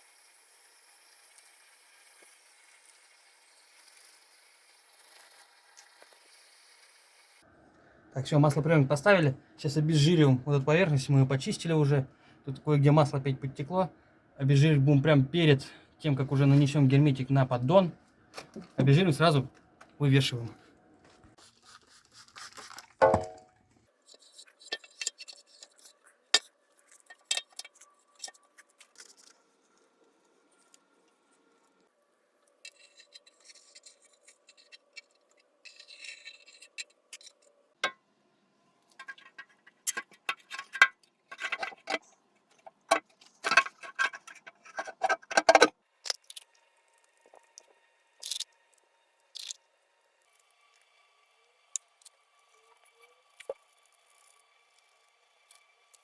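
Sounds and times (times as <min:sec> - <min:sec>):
rag rustling and scraping: 0:39.0 - 0:45.7
tools clicking: 0:49.4 - 0:49.6.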